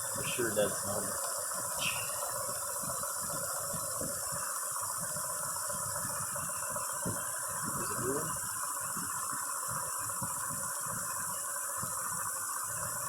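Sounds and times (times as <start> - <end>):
car engine idling unevenly: 0.0 - 8.4.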